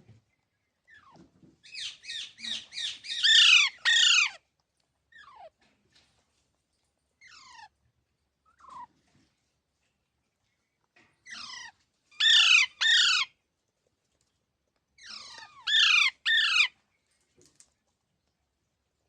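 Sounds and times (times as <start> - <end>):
parrot squawking: 1.8 - 4.4, 11.3 - 13.3, 15.0 - 16.7.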